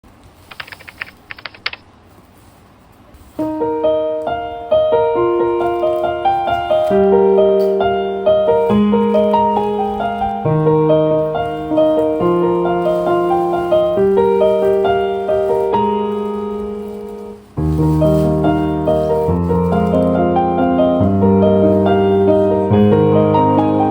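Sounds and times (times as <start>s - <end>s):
sharp clicks: 0.5s - 1.9s
gentle piano music: 3.2s - 23.9s.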